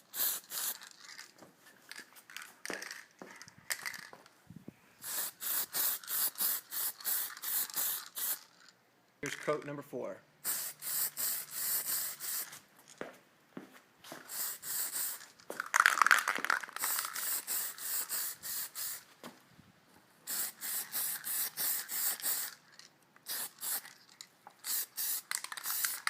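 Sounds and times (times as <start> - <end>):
spray can hissing bursts: 0.0 - 1.0, 5.0 - 8.5, 10.4 - 12.6, 14.2 - 19.1, 20.3 - 22.6, 23.2 - 24.0, 24.6 - 26.0.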